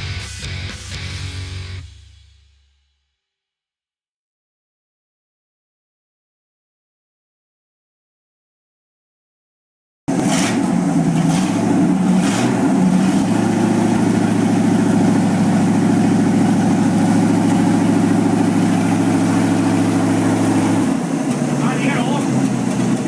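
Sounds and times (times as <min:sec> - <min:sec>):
car engine idling: 0:10.1 - 0:23.0
sharp engine cracks: 0:10.1 - 0:23.0.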